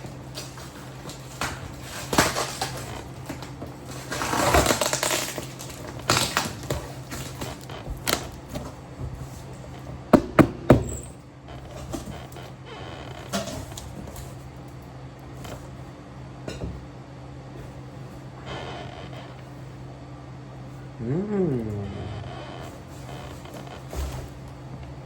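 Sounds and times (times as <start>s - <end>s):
clicks and knocks of objects: 0.2s - 10.0s, 13.2s - 14.8s.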